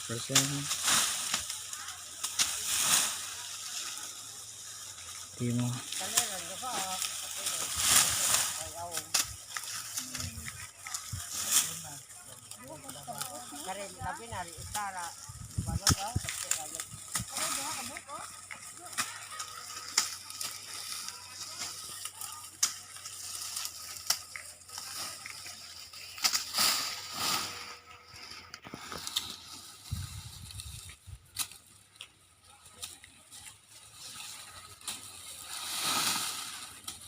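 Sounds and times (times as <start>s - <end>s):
dry corn plants rustling: 0.0s - 37.0s
sharp cracks and snaps: 15.8s - 20.8s, 21.9s - 25.4s.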